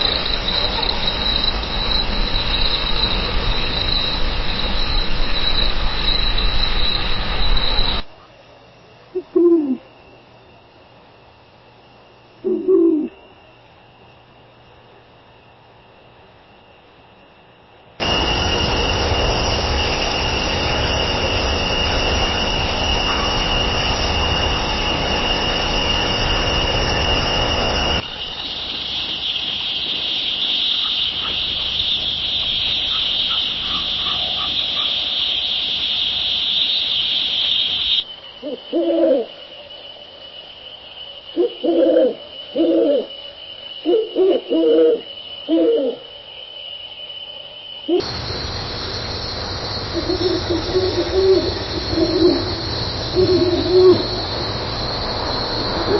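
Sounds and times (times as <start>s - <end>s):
loud noise with high whine: 0.0s - 8.2s, 15.6s - 38.5s, 46.4s - 55.9s
owl hooting: 9.2s - 9.9s, 12.4s - 13.3s, 20.9s - 25.2s, 28.1s - 39.8s, 41.3s - 43.2s, 43.8s - 46.1s, 49.8s - 54.3s.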